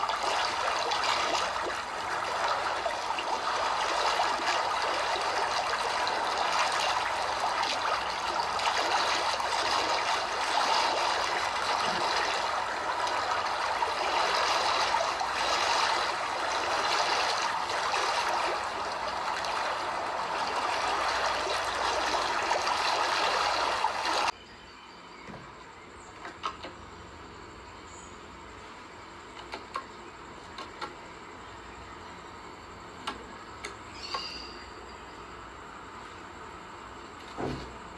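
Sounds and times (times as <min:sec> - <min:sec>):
running water rushing: 0:00.0 - 0:24.4.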